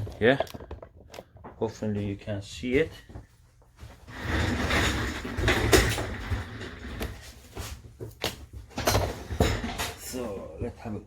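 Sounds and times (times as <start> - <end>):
rustling and scraping on workbench: 3.2 - 10.3.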